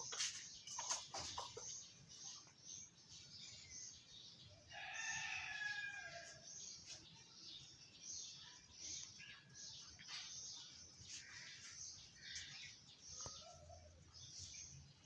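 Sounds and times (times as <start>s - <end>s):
rooster crowing: 4.7s - 6.4s.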